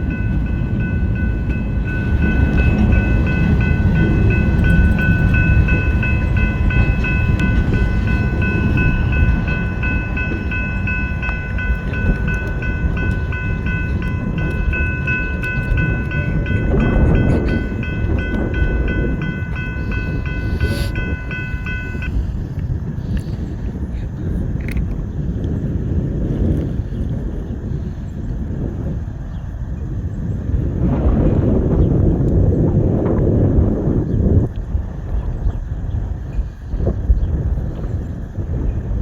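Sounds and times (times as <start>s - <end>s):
high pulsing ringing tone: 0.0s - 22.8s
freight train rumbling past: 0.0s - 24.1s.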